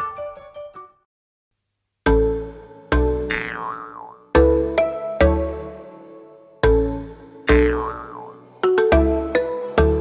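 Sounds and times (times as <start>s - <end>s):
plucked notes: 7.5s - 10.0s.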